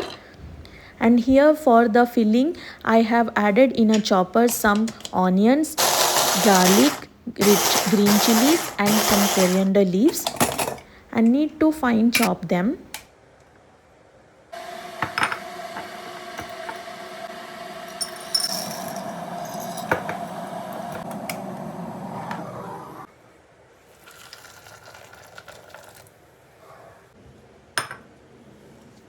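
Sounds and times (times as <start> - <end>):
vegetable chopper running: 5.8 - 9.7, 14.6 - 23.1.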